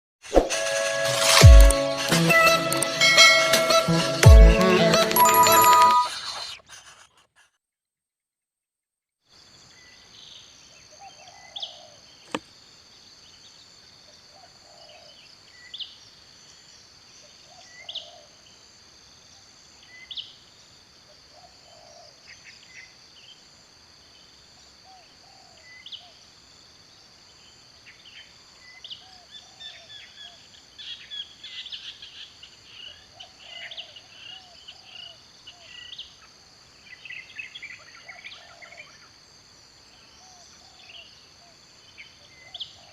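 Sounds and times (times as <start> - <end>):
high insect chorus: 9.3 - 42.9.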